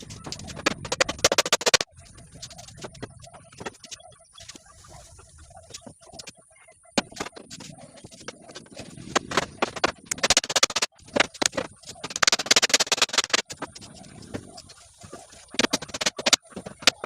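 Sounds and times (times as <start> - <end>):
tapping and clicking on wood: 0.1 - 1.9, 7.0 - 14.5, 15.5 - 17.0.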